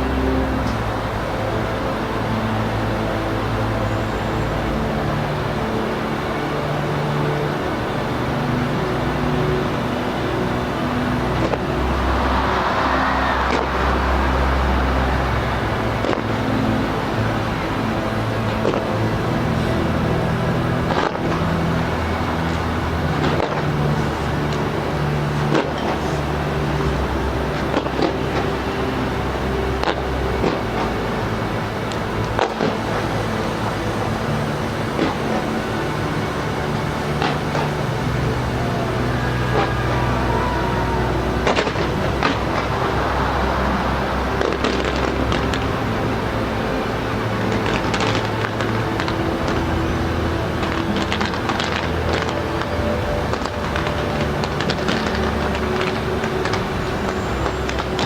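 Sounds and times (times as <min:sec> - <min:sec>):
city noise: 0:00.0 - 0:58.0
low engine-like rumble: 0:00.0 - 0:58.0.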